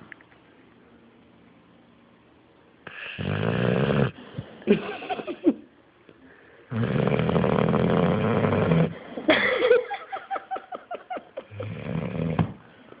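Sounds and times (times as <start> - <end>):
dog snoring loudly: 2.9 - 4.2, 6.7 - 9.0, 11.6 - 12.6.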